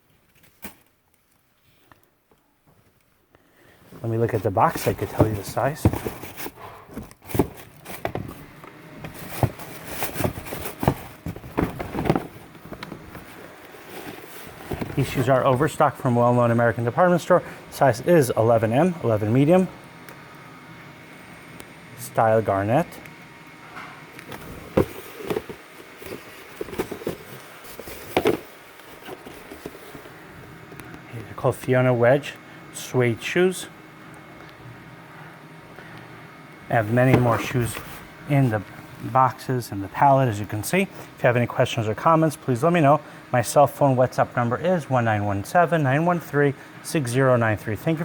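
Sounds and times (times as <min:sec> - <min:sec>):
cardboard box being handled: 0:04.7 - 0:08.5, 0:09.1 - 0:15.3, 0:24.4 - 0:30.1, 0:36.9 - 0:38.0
cardboard box knocks and rustles: 0:09.2 - 0:12.8.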